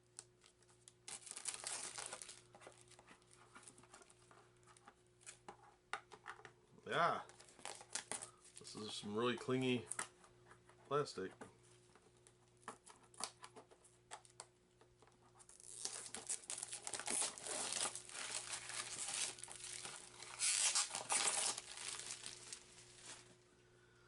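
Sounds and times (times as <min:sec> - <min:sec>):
plastic wrap crinkling and tearing: 0:00.2 - 0:04.2, 0:07.4 - 0:08.9, 0:15.5 - 0:23.4.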